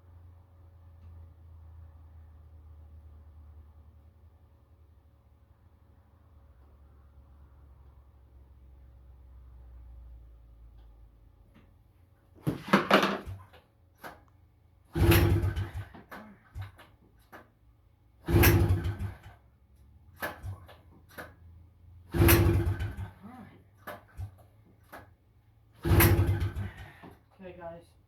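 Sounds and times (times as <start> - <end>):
engine pull-start cranking: 14.9 - 17.5, 18.2 - 19.5, 20.1 - 21.4, 22.1 - 23.2, 23.8 - 25.2, 25.8 - 27.3.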